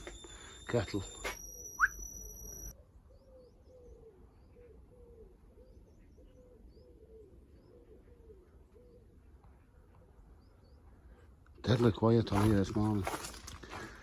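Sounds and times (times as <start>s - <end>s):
small birds chirping: 0.0s - 14.0s
pigeon cooing: 3.2s - 10.2s.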